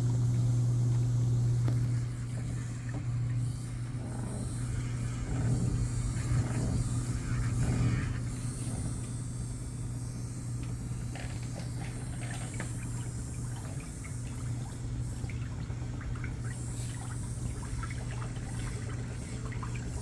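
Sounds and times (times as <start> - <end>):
low motor hum: 0.0 - 20.0
water trickling and splashing: 11.2 - 20.0.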